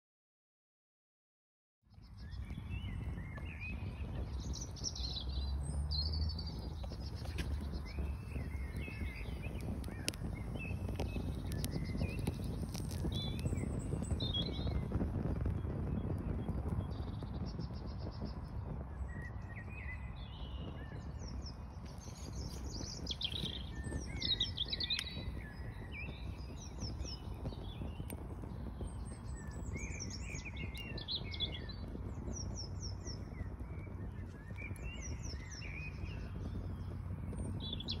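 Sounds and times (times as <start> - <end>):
songbirds chirping and trilling: 1.9 - 38.0
steady low rumble: 2.1 - 38.0.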